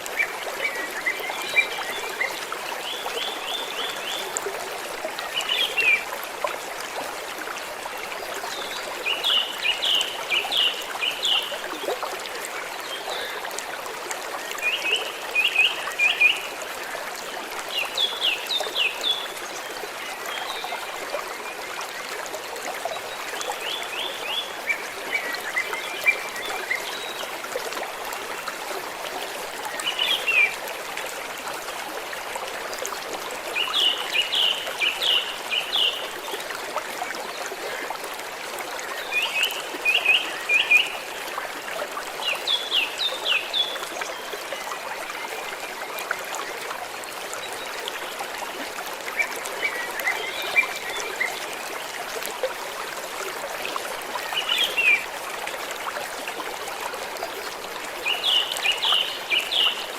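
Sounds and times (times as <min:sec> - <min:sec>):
stream water flowing: 0:00.0 - 0:59.9.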